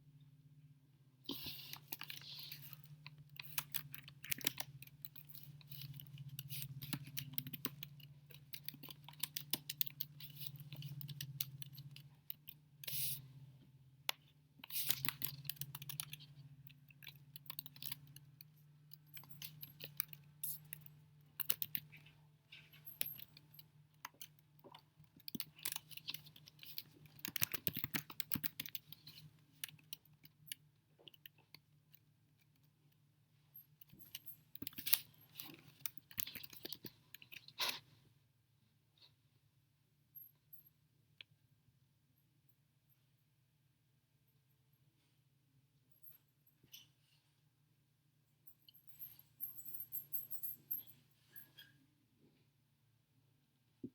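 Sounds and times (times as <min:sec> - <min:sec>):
quick irregular clicks and taps: 0:14.0 - 0:33.0.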